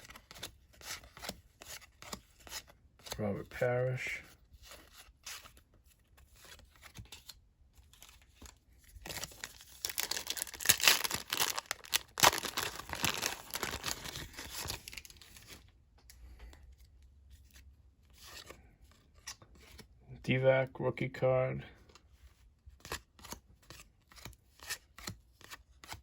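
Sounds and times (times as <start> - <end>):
wrapper torn and crumpled: 9.0 - 15.6.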